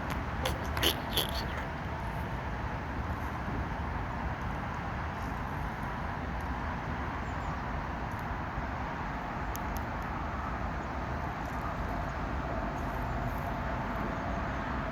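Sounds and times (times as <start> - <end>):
distant traffic rumble: 0.0 - 14.9.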